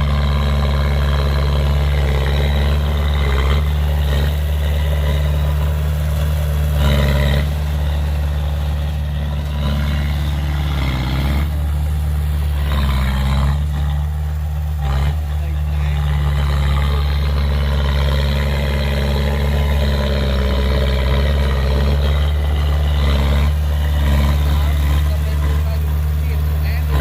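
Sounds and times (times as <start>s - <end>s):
heavy diesel machinery running: 0.0s - 27.0s.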